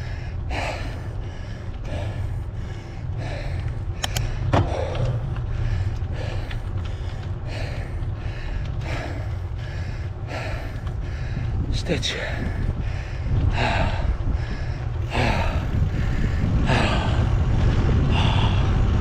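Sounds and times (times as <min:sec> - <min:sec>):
low rumble: 0:00.0 - 0:19.0
person breathing hard: 0:00.0 - 0:19.0
sharp clicks: 0:03.6 - 0:10.1.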